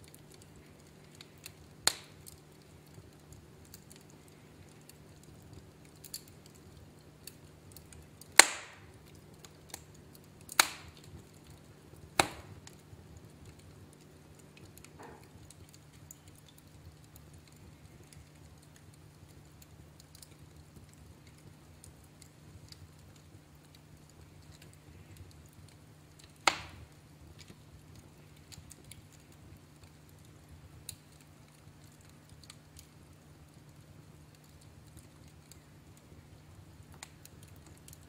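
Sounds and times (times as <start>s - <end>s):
fire crackling in a fireplace: 0.0s - 38.0s
loud sharp pop: 8.4s - 8.8s, 12.2s - 12.5s.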